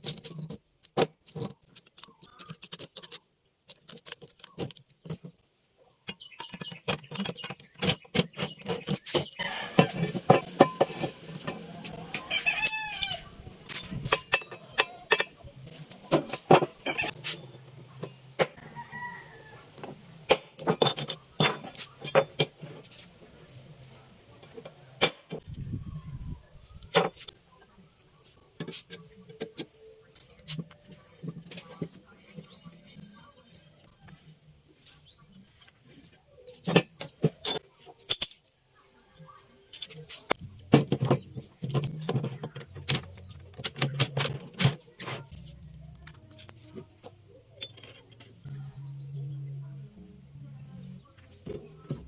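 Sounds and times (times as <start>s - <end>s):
metal parts clicking and knocking: 0.0s - 5.4s, 6.0s - 12.8s, 13.6s - 17.2s, 19.8s - 22.7s, 36.6s - 38.5s, 39.7s - 48.5s.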